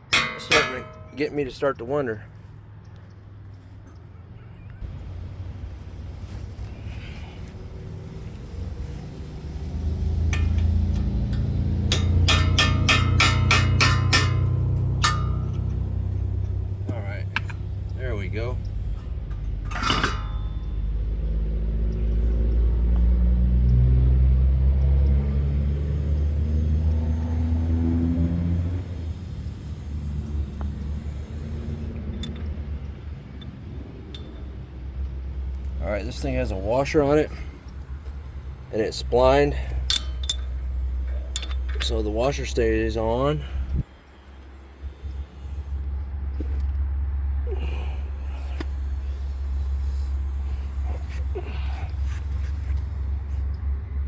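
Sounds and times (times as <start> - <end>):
sledgehammer striking steel chisel: 0.0 - 1.4, 10.0 - 17.6, 18.9 - 20.7, 39.9 - 42.0
light metallic clinks: 0.0 - 1.5, 8.8 - 21.0, 32.0 - 34.6, 39.5 - 42.6
low engine-like rumble: 0.0 - 54.0.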